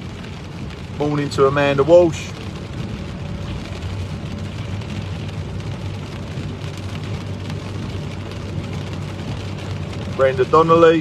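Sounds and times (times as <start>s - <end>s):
car engine and tyre hum: 0.0s - 11.0s
rain hissing and pattering: 0.0s - 11.0s.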